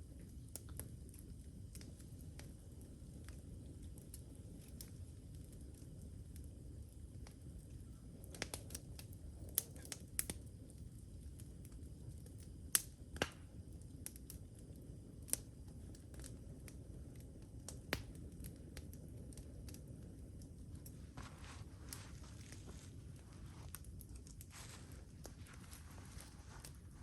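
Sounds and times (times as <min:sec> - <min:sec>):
campfire crackling and popping: 0:00.0 - 0:27.0
low steady rumble: 0:10.5 - 0:27.0.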